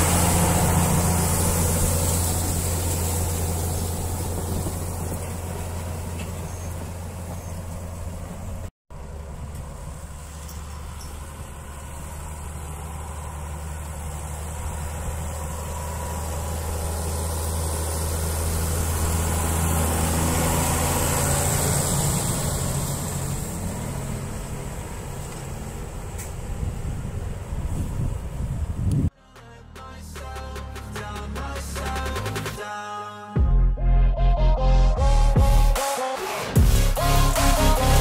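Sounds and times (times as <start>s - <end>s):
tractor diesel engine running: 0.0s - 29.1s.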